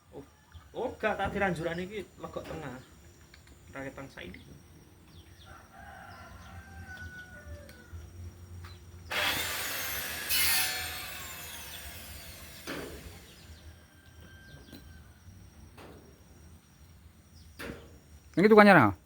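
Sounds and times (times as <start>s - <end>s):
electric hand planer running: 9.1s - 13.6s
planer winding down whine: 9.1s - 13.8s.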